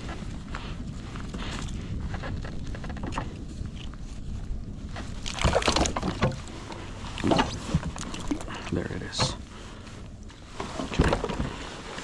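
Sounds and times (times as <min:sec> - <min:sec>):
wind rumble on microphone: 0:00.0 - 0:12.0
water sloshing around kayak: 0:04.0 - 0:12.0
splashing and clattering fish: 0:05.0 - 0:09.4.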